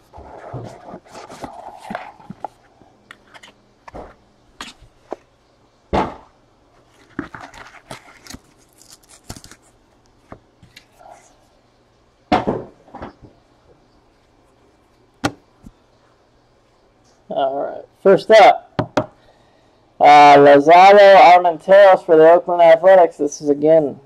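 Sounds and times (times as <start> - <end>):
wrappers rustling and tearing: 6.8 - 9.8.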